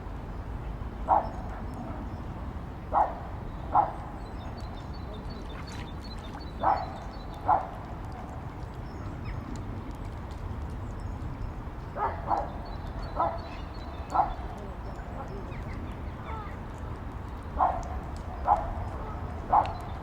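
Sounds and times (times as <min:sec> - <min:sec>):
dog barking: 0:01.1 - 0:02.0, 0:02.9 - 0:04.0, 0:06.6 - 0:07.7, 0:12.0 - 0:14.4, 0:17.6 - 0:19.8.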